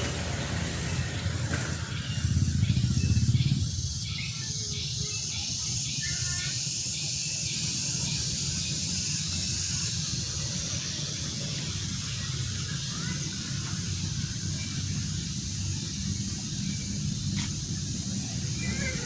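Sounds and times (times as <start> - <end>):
insects shrilling: 0.1 - 19.0.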